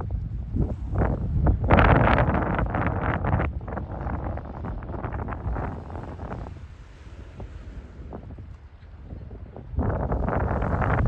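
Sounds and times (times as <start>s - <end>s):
gusty wind buffeting microphone: 0.0s - 11.0s.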